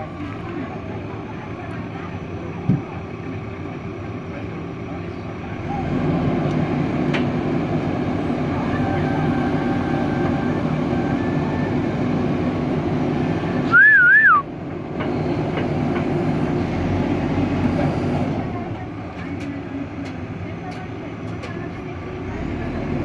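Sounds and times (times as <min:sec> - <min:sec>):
diesel engine running: 0:00.0 - 0:23.0
loud whistle: 0:13.7 - 0:14.5.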